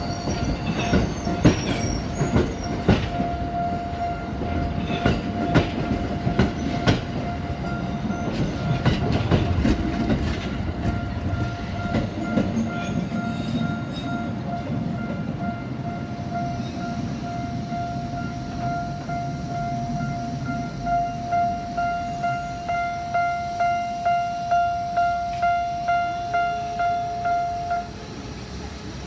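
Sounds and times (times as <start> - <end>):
level crossing warning bell ringing: 0.0 - 28.2
low train rumble: 0.0 - 29.0
train wheels clacking over rail joints: 0.3 - 3.4, 4.4 - 14.2.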